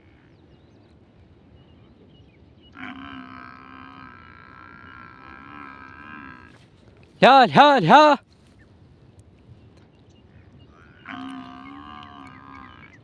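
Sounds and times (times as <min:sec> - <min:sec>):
cow lowing: 0:02.8 - 0:06.6, 0:10.7 - 0:13.0.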